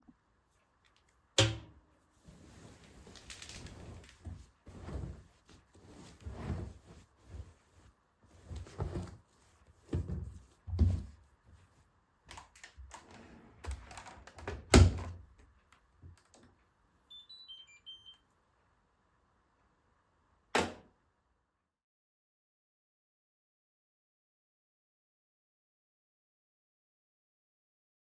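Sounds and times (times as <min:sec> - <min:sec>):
short electronic beeps: 0:17.1 - 0:18.2.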